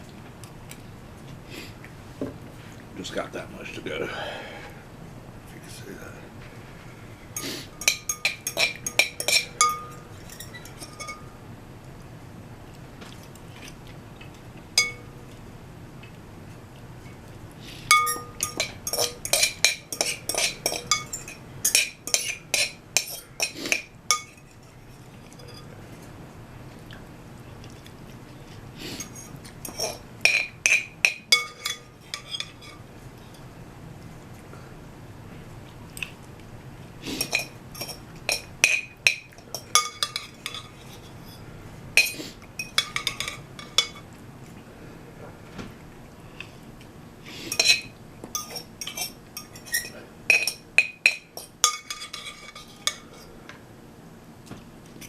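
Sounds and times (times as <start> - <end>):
utensil clinking against a bowl: 7.4 - 11.4, 14.8 - 15.4, 17.9 - 25.7, 29.0 - 33.5, 37.2 - 41.4, 42.0 - 44.1, 47.5 - 53.3.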